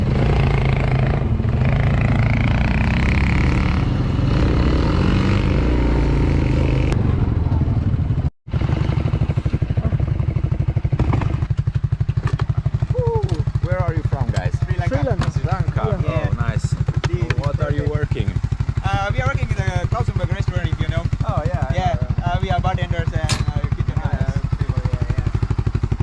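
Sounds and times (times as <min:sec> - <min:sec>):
vehicle engine running: 0:06.3 - 0:26.0
engine idling: 0:08.8 - 0:26.0.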